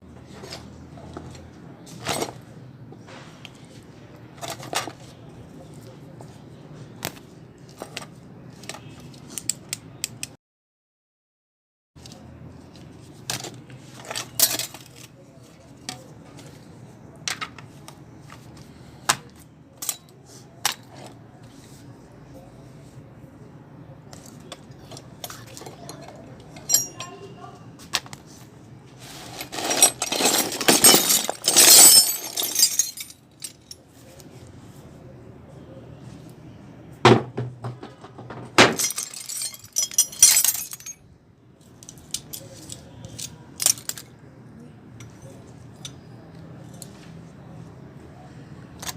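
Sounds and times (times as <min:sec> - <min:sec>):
metal hand tools clinking: 0:25.9 - 0:27.2, 0:29.3 - 0:33.8, 0:38.7 - 0:41.0.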